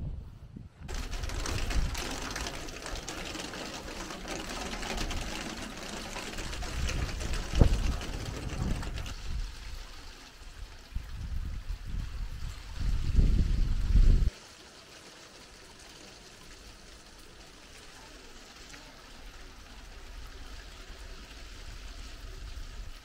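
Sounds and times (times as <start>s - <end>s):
wind buffeting microphone: 0.0s - 14.3s
wind hissing through trees: 0.0s - 23.0s.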